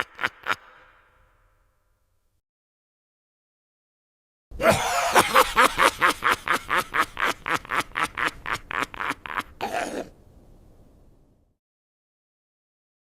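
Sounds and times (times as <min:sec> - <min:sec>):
shrill evil laugh: 0:00.0 - 0:01.2, 0:04.6 - 0:10.1.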